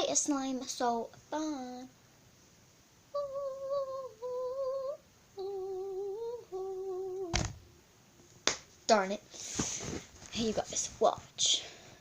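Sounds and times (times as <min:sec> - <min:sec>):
girl humming: 0:03.1 - 0:07.4
sharp snap: 0:08.4 - 0:08.7.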